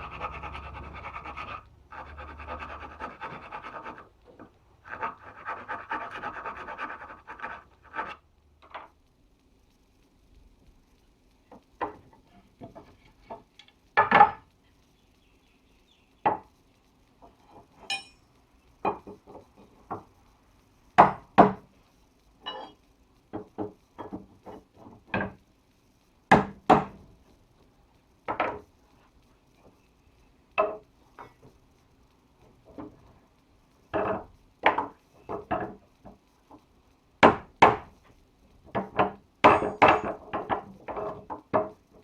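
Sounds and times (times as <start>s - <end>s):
metal holdfast knocking wood: 38.8s - 41.7s.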